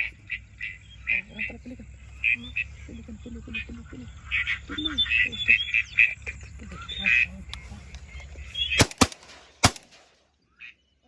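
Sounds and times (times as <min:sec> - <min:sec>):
ducks quacking: 0:00.0 - 0:09.1
shotgun shots: 0:08.7 - 0:10.3.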